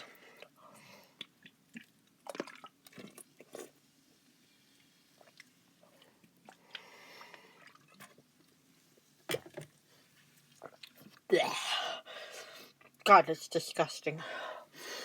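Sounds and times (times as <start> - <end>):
mouth sipping and swallowing: 5.2 - 8.2.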